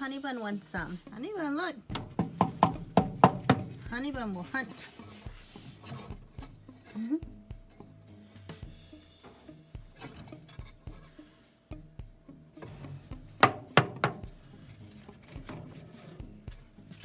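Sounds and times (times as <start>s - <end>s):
background music with steady beat: 0.0s - 17.0s
loud sharp knocks: 1.9s - 4.3s, 13.4s - 14.4s.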